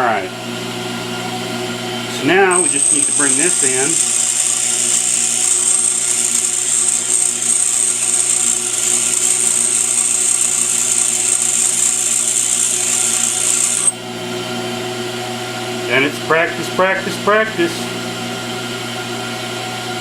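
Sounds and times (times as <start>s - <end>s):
grinder motor humming: 1.2s - 15.2s
high-pitched grinding hiss: 2.4s - 14.0s.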